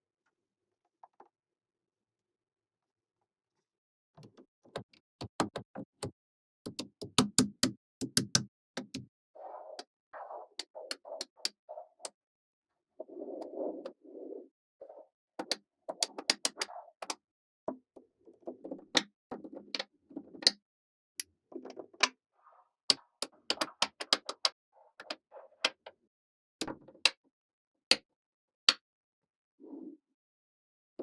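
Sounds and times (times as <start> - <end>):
magnetic balls clicking together: 6.7 - 9.0.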